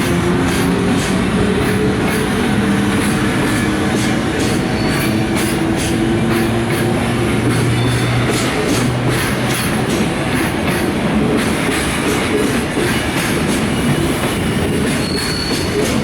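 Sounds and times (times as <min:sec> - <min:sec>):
wheels squealing: 0:00.0 - 0:09.8, 0:14.0 - 0:16.0
train wagons rumbling on rails: 0:00.0 - 0:16.0.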